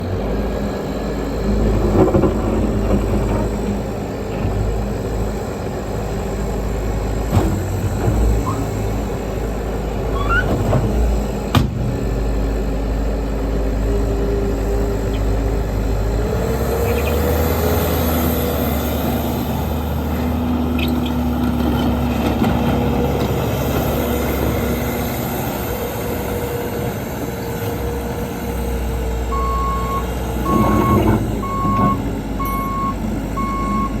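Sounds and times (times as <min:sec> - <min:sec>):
diesel engine running with whine: 0:00.0 - 0:34.0
backup alarm beeping: 0:29.3 - 0:34.0.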